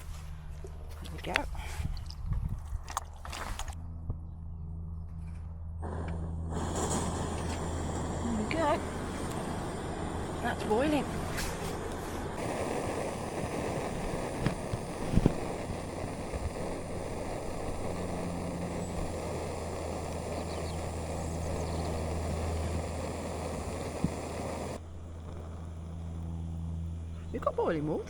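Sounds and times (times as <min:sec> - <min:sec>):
gas burner hissing: 0:05.8 - 0:27.9.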